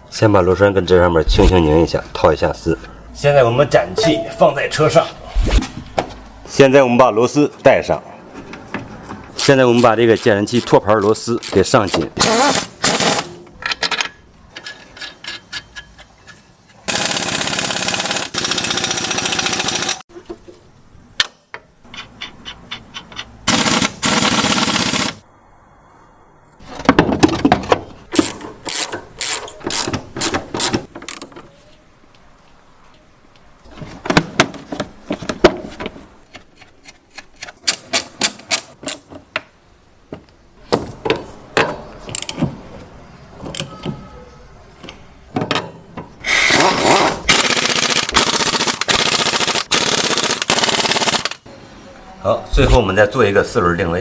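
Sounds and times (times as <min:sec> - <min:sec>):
hand tools clicking and knocking: 0:13.6 - 0:17.0, 0:21.2 - 0:23.4, 0:27.3 - 0:31.4
impact wrench running: 0:16.9 - 0:20.0, 0:23.5 - 0:25.2, 0:46.3 - 0:51.4.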